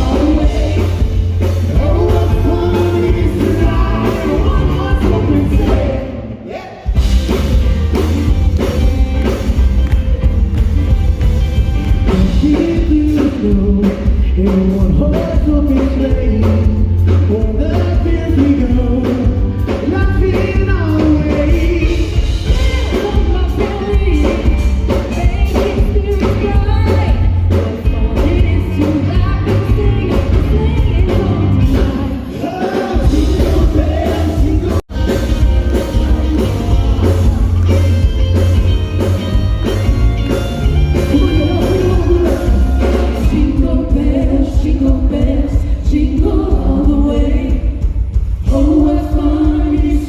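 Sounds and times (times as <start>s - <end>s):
voices singing: 0.0s - 7.0s, 27.7s - 38.0s, 41.1s - 47.8s, 48.4s - 50.0s
band accompaniment: 0.0s - 50.0s.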